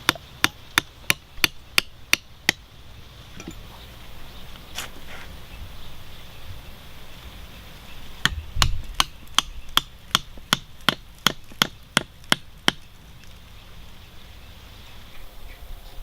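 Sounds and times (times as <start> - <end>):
tool striking wood: 0.0 - 2.6, 8.2 - 12.9.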